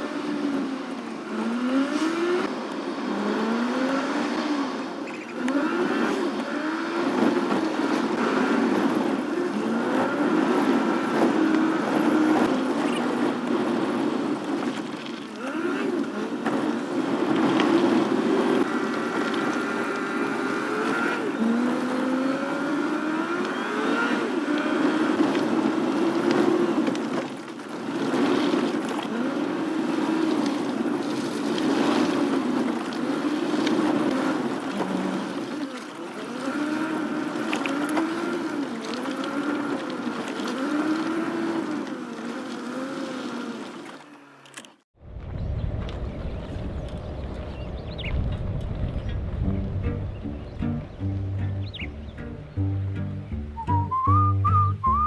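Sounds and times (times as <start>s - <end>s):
engines revving: 0.0s - 44.7s, 47.2s - 55.0s
steady engine drone: 43.6s - 55.0s.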